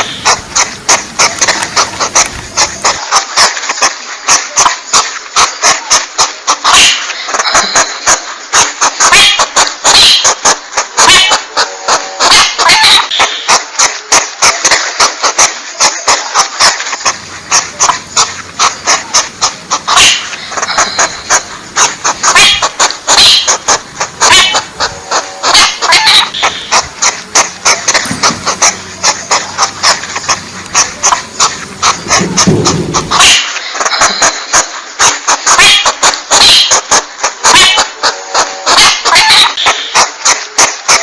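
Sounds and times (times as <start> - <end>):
porcupine clicking and chattering: 0.0 - 11.4, 12.6 - 37.6
low hum: 17.0 - 33.2.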